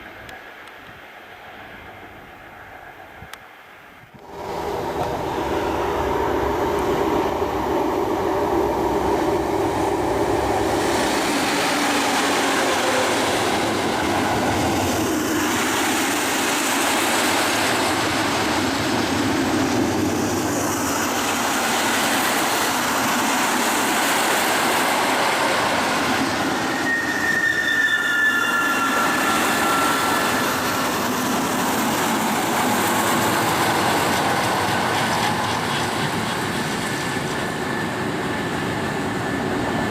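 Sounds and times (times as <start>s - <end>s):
train wheels rumbling on rails: 4.0s - 39.9s
wheel squeal: 26.6s - 31.0s.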